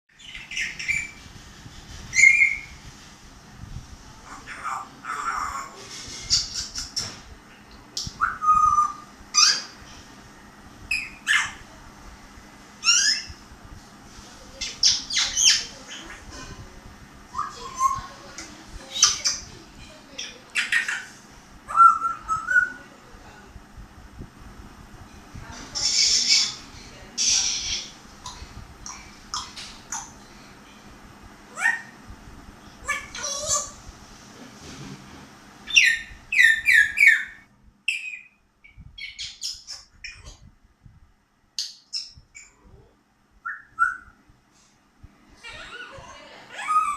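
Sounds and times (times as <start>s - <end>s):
parrot whistling and chirping: 0.2s - 1.2s, 2.1s - 2.8s, 8.0s - 9.7s, 10.9s - 11.6s, 12.8s - 13.4s, 21.7s - 22.8s, 35.6s - 40.3s, 43.4s - 44.2s, 46.5s - 46.9s
parrot squawking: 4.3s - 6.8s, 10.9s - 11.6s, 12.8s - 13.4s, 20.2s - 22.8s, 27.2s - 28.0s, 31.5s - 31.9s, 32.8s - 33.8s, 35.7s - 38.4s, 46.5s - 46.9s
parrot whistling: 8.2s - 9.6s, 21.7s - 22.8s, 43.4s - 44.2s.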